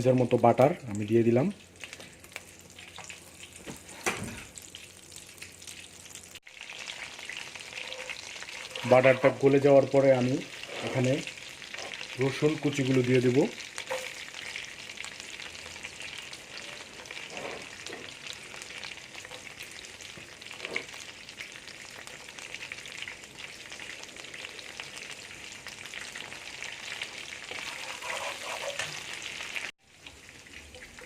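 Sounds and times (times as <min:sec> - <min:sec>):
butter and garlic sizzling in pan: 0:01.8 - 0:31.0
light stirring scrapes: 0:07.6 - 0:09.6, 0:10.5 - 0:12.0, 0:16.5 - 0:18.1, 0:27.5 - 0:29.2.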